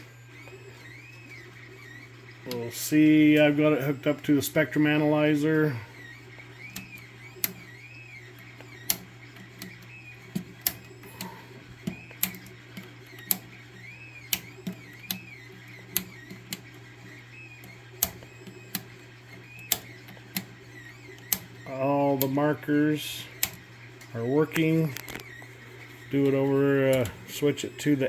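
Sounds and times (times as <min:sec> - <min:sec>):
electrical hum: 0:00.0 - 0:28.0
faint high whine rising and falling: 0:00.0 - 0:28.0
sharp electronic clicks: 0:17.5 - 0:22.4.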